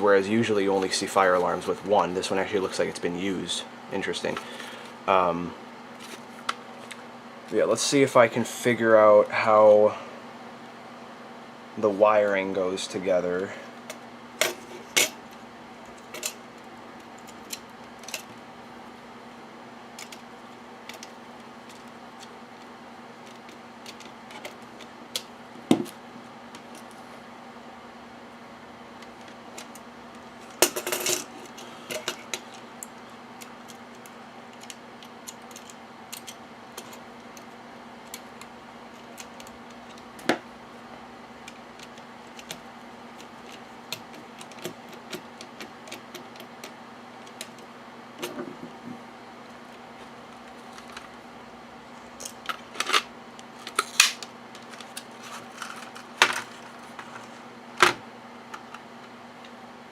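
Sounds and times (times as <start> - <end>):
steady low hum: 0.0 - 59.9
plastic parts clicking and rattling: 52.2 - 57.3.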